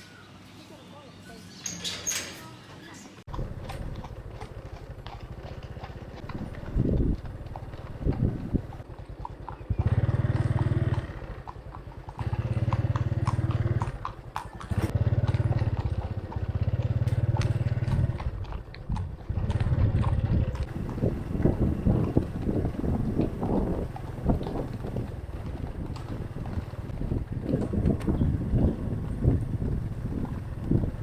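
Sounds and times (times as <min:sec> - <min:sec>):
horse hooves clopping: 0:01.3 - 0:31.0
loud low rumbling: 0:19.3 - 0:31.0.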